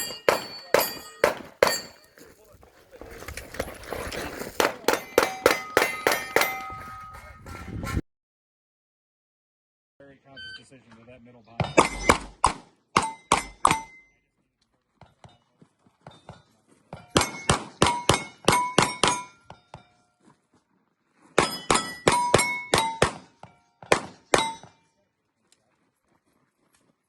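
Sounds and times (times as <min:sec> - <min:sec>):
pistol shots: 0:00.0 - 0:01.9, 0:23.9 - 0:24.6
steel target plate ringing: 0:00.0 - 0:02.3, 0:04.6 - 0:07.6, 0:13.0 - 0:14.2, 0:21.4 - 0:23.0, 0:24.3 - 0:24.8.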